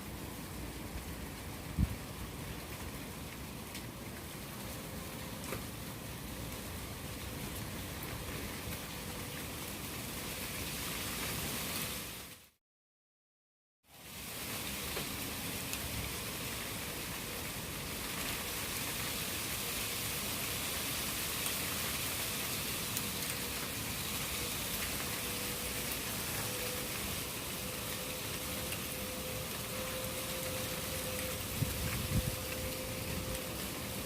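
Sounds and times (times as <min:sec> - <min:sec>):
steady rain falling: 0:00.0 - 0:12.6, 0:13.9 - 0:34.0.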